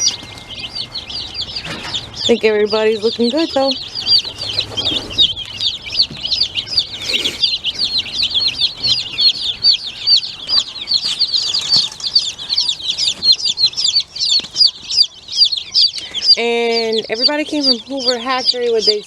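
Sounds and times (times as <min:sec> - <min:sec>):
chicks peeping: 0:00.0 - 0:19.0
rustling: 0:03.8 - 0:15.0.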